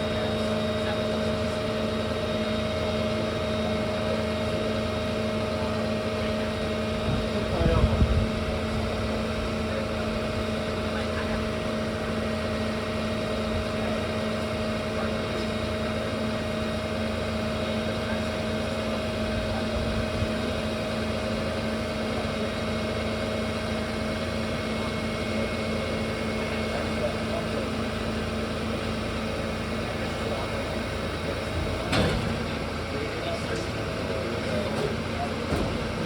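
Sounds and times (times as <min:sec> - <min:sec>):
engine idling: 0:00.0 - 0:36.0.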